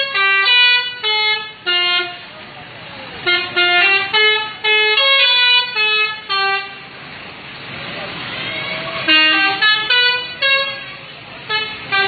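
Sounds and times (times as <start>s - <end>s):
musical air horn: 0.0s - 2.2s, 3.2s - 6.9s, 9.0s - 12.0s
traffic noise: 0.0s - 12.0s.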